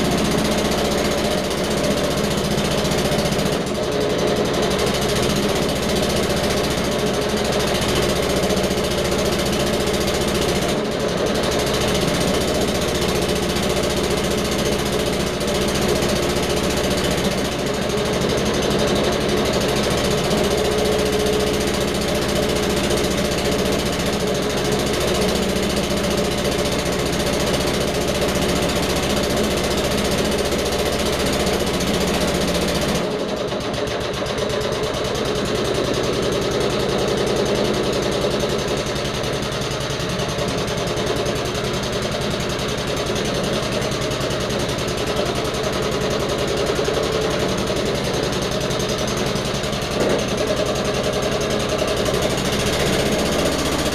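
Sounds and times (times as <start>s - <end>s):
lawnmower engine running: 0.0s - 53.9s.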